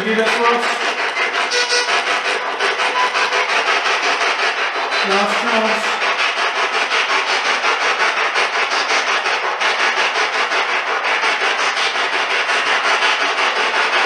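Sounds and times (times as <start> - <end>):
pulsing radio static: 0.0 - 7.0.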